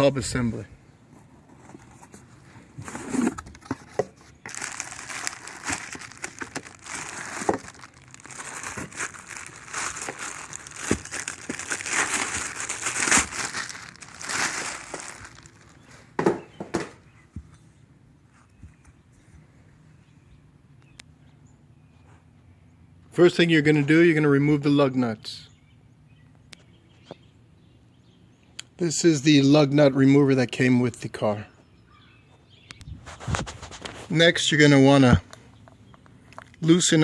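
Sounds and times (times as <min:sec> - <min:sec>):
packaging crinkling: 0:02.8 - 0:15.9.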